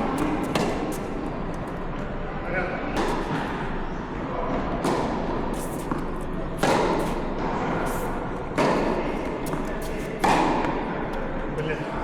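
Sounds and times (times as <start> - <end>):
tennis ball racket hits: 0.0 - 1.3, 4.8 - 11.2.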